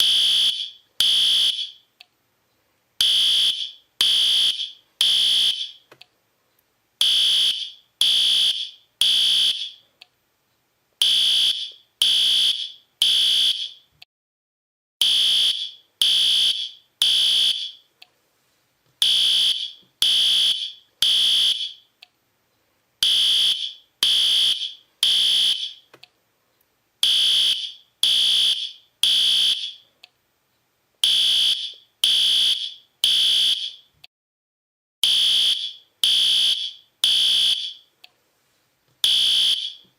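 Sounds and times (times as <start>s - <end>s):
fire alarm beeps: 0.0s - 1.9s, 3.0s - 5.8s, 7.0s - 9.8s, 11.0s - 13.8s, 15.0s - 17.9s, 19.0s - 21.9s, 23.0s - 25.9s, 27.0s - 29.9s, 31.0s - 33.9s, 35.0s - 37.9s, 39.0s - 39.8s.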